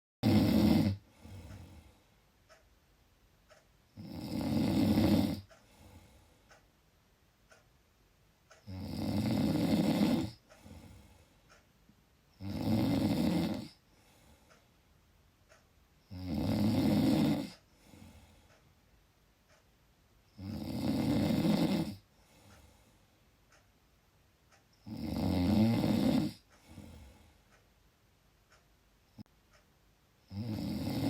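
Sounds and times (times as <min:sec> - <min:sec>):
loud rasping snoring: 0:00.2 - 0:01.7, 0:04.0 - 0:05.5, 0:08.6 - 0:10.9, 0:12.4 - 0:13.8, 0:16.1 - 0:17.6, 0:20.4 - 0:22.1, 0:24.8 - 0:27.1, 0:30.3 - 0:31.0
faint breathing: 0:01.0 - 0:02.6, 0:05.4 - 0:06.7, 0:10.2 - 0:11.8, 0:13.6 - 0:15.6, 0:17.4 - 0:18.8, 0:21.9 - 0:23.6, 0:26.3 - 0:27.7.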